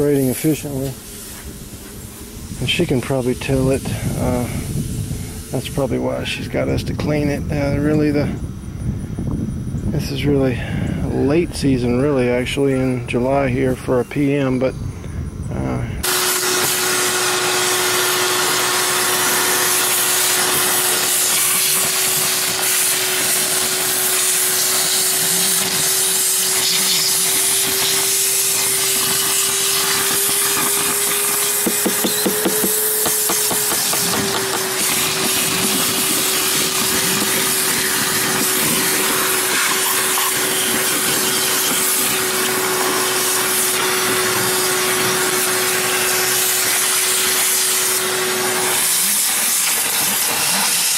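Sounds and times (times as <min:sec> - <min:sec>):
hiss of rushing air: 0:00.0 - 0:06.5, 0:16.0 - 0:50.9
electric motor humming: 0:16.0 - 0:50.9.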